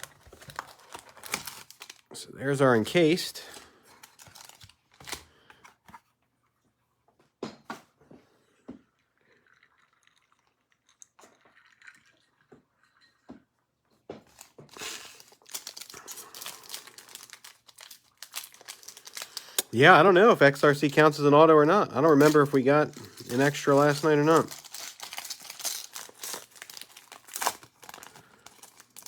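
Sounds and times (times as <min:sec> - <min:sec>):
plastic crinkling and tearing: 0:00.0 - 0:02.1, 0:02.9 - 0:06.0, 0:14.3 - 0:21.2, 0:22.0 - 0:29.0
clicks and rustles of packaging: 0:00.0 - 0:02.2, 0:03.4 - 0:06.2, 0:14.1 - 0:19.8, 0:22.0 - 0:29.0.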